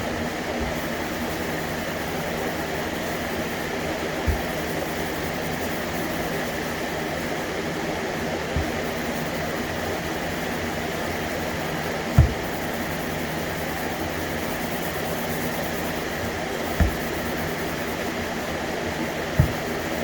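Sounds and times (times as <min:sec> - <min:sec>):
soft low thumps: 0:04.3 - 0:05.2, 0:08.6 - 0:09.1, 0:12.0 - 0:13.2, 0:16.2 - 0:18.0, 0:19.4 - 0:20.0.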